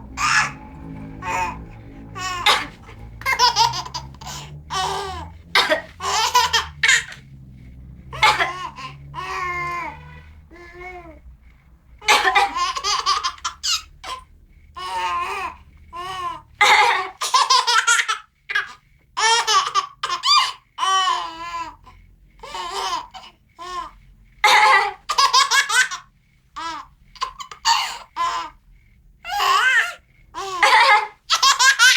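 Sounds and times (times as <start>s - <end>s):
baby laughing: 0.2s - 7.2s, 8.1s - 11.2s, 12.0s - 14.2s, 14.8s - 21.7s, 24.5s - 26.0s, 29.3s - 31.9s.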